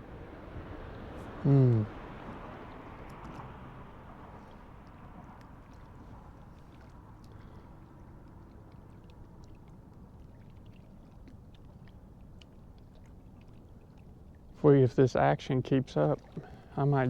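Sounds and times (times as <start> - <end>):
low steady rumble: 0.0 - 17.0
small ticks and drips: 0.0 - 17.0
water lapping on shore: 0.0 - 17.0.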